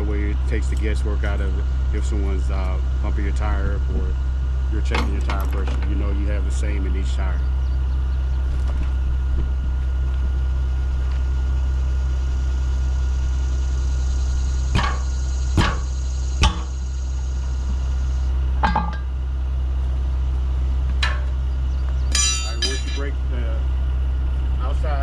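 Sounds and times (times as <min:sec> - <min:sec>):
steady low hum: 0:00.0 - 0:25.0
hammer strikes on wheel: 0:14.7 - 0:16.8, 0:18.6 - 0:19.1.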